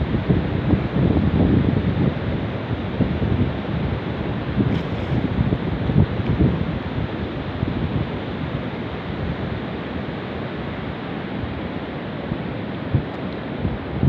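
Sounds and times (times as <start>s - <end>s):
wind buffeting microphone: 0.0s - 10.1s.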